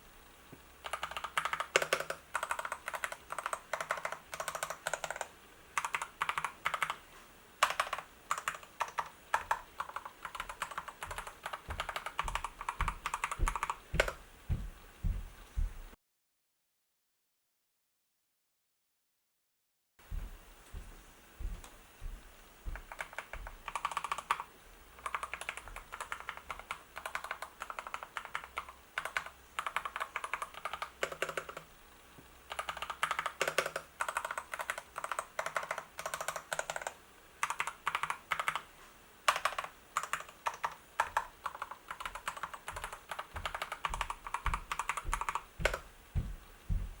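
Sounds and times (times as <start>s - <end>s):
mechanical keyboard typing: 0.8s - 7.0s, 7.6s - 14.2s, 22.7s - 31.7s, 32.5s - 38.7s, 39.3s - 45.9s.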